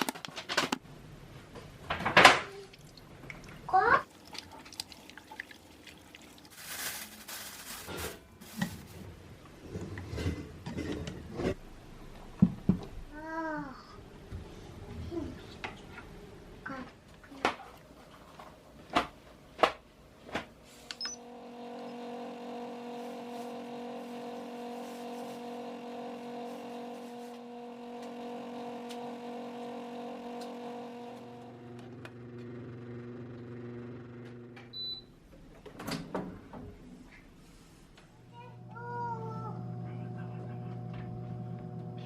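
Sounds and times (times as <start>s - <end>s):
kitchen appliance humming: 20.8s - 35.0s, 38.4s - 42.0s.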